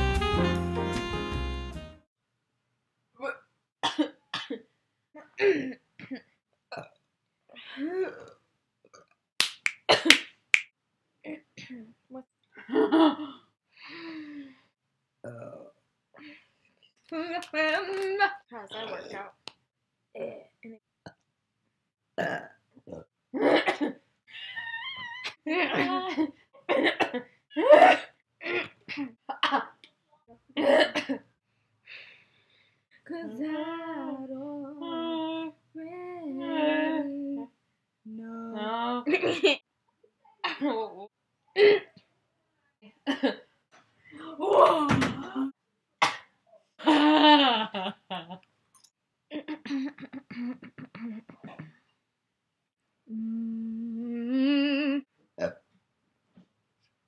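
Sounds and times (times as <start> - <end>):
person grunting and clearing throat: 7.9 - 8.4, 15.3 - 15.7, 22.2 - 23.9, 49.5 - 51.8, 55.4 - 55.6
vocal grunt: 15.3 - 15.7
choppy vocal noises: 18.7 - 19.3
person humming a long note: 53.1 - 55.0.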